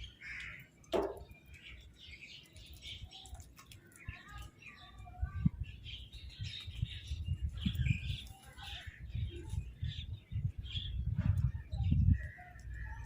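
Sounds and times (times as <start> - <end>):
crows and mynahs calling: 0.0 - 1.3, 11.8 - 13.0.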